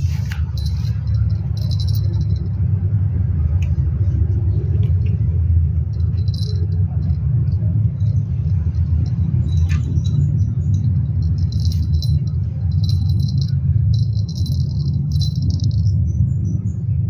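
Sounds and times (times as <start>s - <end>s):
small metal jingling: 0.0s - 2.6s, 5.9s - 16.2s
low rumble: 0.0s - 16.6s.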